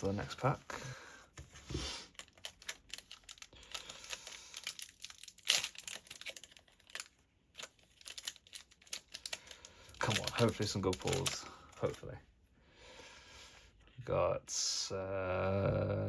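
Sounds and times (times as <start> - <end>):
foil wrapper tearing and crinkling: 2.0 - 12.0.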